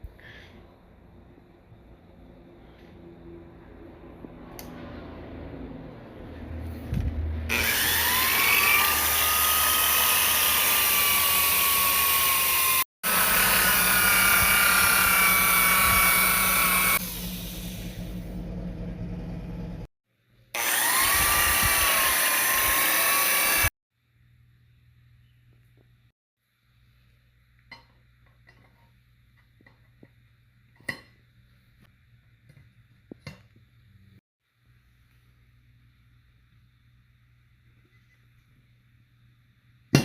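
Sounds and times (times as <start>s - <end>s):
power tool motor whining: 7.5s - 17.0s, 20.6s - 23.7s.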